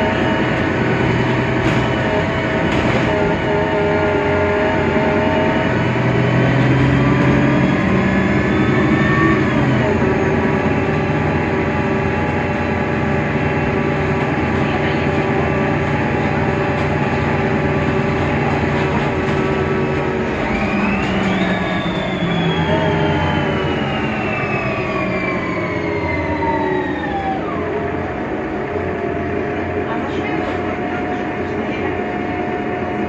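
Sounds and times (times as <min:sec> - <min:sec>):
bus engine running: 0:00.0 - 0:33.0
gearbox whine: 0:17.4 - 0:29.2.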